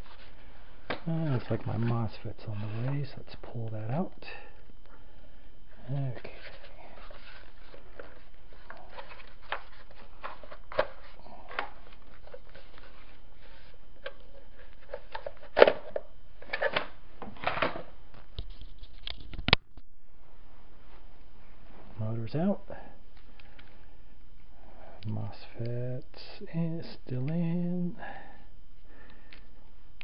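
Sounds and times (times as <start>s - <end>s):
rustling and scraping of parts: 0.0s - 3.6s, 5.9s - 19.6s.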